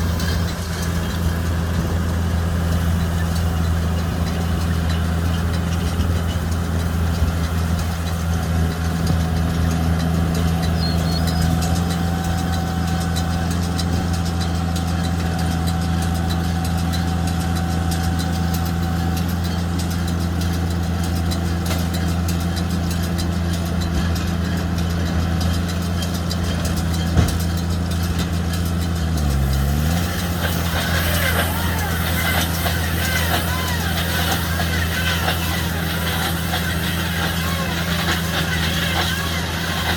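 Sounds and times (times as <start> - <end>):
tractor engine running: 0.0 - 39.9
baler running: 17.8 - 39.9.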